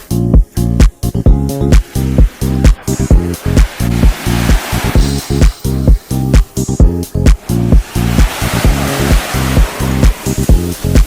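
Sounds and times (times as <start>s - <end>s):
electronic dance music: 0.0s - 11.0s
rushing surf-like noise: 1.8s - 6.3s, 7.6s - 11.0s.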